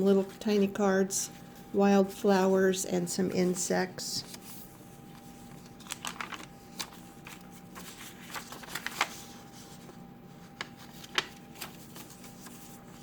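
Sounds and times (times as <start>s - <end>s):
faint steady hum: 0.0s - 13.0s
paper pages rustling: 3.4s - 13.0s.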